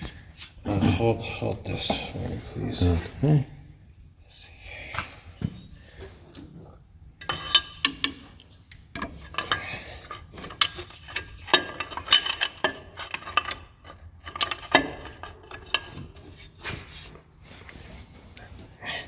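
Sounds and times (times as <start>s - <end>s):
tools clinking on metal: 9.0s - 16.0s.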